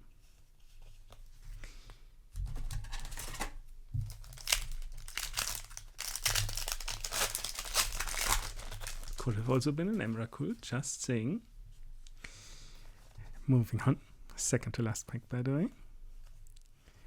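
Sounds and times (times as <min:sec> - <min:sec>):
foil wrapper crinkling and tearing: 0:02.7 - 0:09.6.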